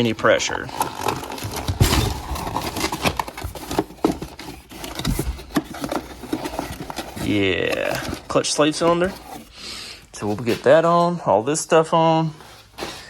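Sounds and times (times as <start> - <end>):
packaging rustling: 0.0 - 11.0.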